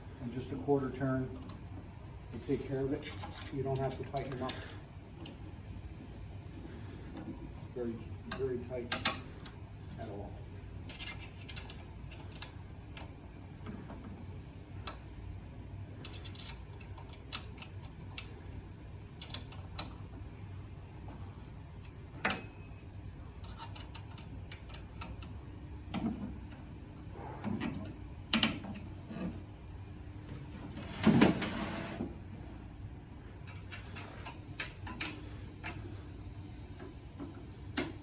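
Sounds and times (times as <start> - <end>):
ringing metal clink: 22.2 - 22.9.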